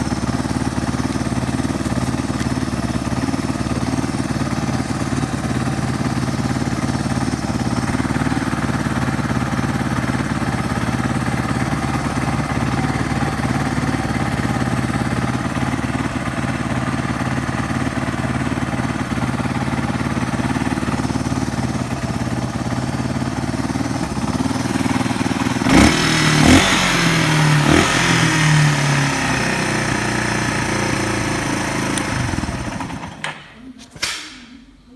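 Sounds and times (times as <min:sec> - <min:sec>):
motorcycle engine idling: 0:00.0 - 0:33.4.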